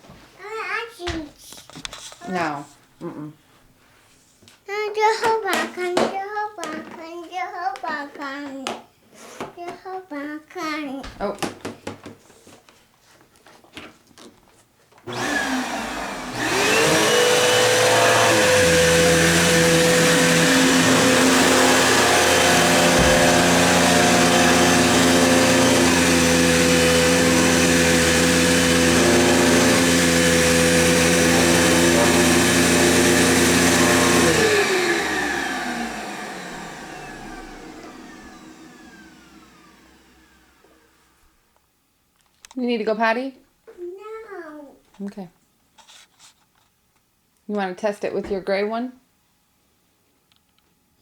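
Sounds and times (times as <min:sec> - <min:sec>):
vacuum cleaner motor whine: 0:15.1 - 0:41.4.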